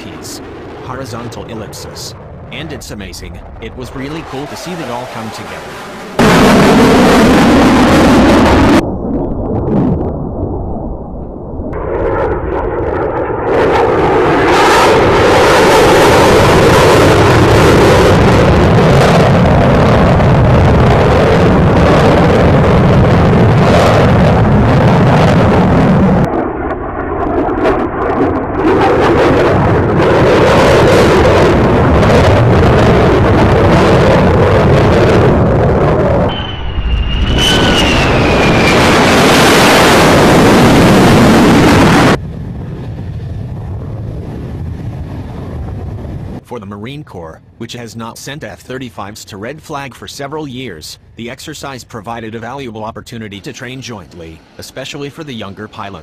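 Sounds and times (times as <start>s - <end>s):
fighter jet engines running: 0.0s - 56.0s
high turbine whistle: 36.2s - 42.2s.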